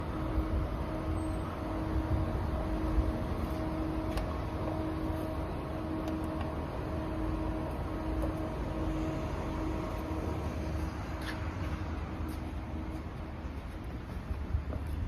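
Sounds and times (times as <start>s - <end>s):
faint steady tone: 0.0s - 11.2s
cooling unit mechanical hum: 0.0s - 15.0s.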